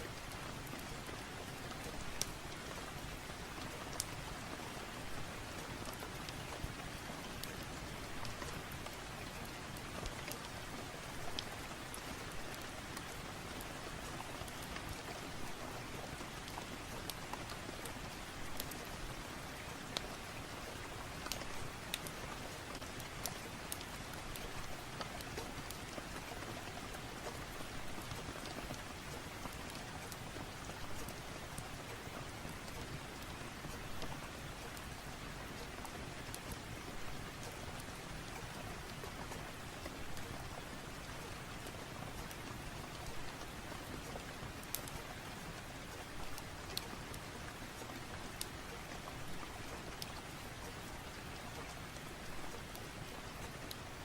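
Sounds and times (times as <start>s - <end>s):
steady rain: 0.0s - 54.0s
wood fire crackling: 16.2s - 54.0s.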